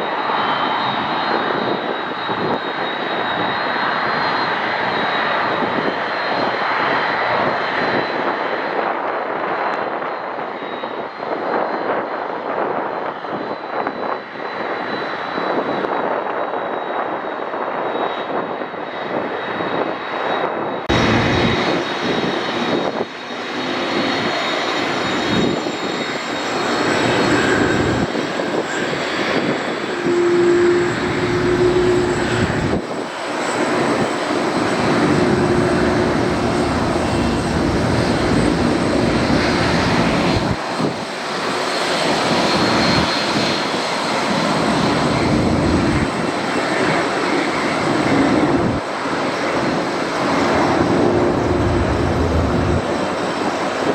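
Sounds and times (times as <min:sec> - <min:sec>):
high jet whine: 0:00.0 - 0:53.9
jet engines rumbling: 0:00.0 - 0:53.9.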